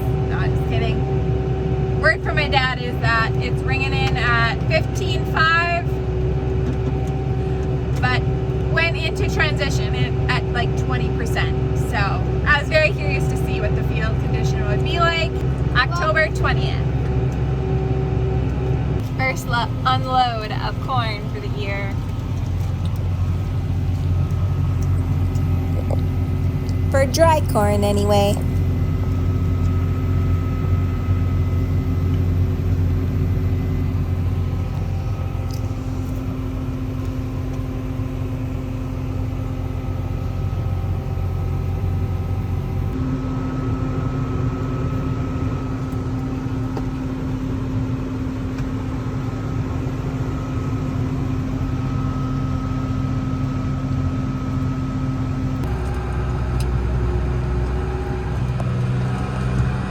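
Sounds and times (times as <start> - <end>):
farm machinery engine drone: 0.0 - 59.9.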